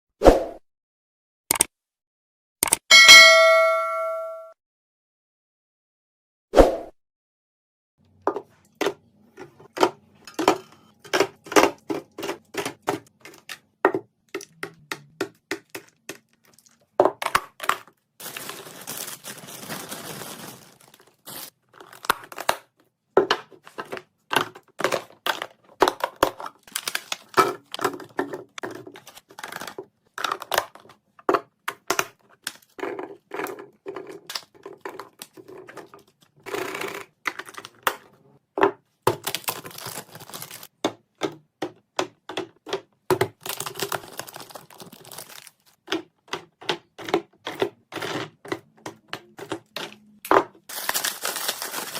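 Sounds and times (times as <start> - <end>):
containers clicking and clacking: 8.3 - 18.4, 23.2 - 50.6
packaging crinkling: 17.6 - 22.4, 39.2 - 40.7, 43.4 - 45.8, 50.6 - 51.9.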